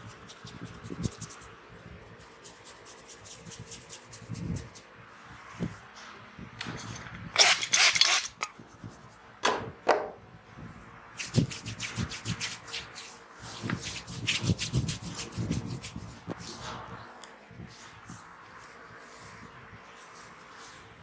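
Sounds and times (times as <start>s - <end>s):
hands rubbing hair and scalp: 11.2s - 16.7s.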